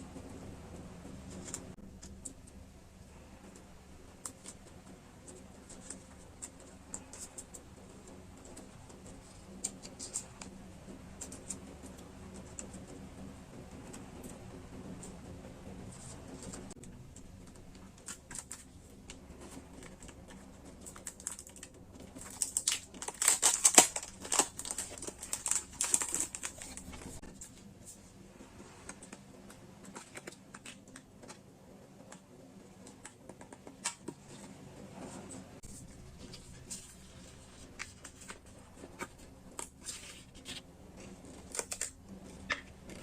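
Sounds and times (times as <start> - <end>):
crackling packaging handling: 16.4 - 28.0, 35.6 - 43.0.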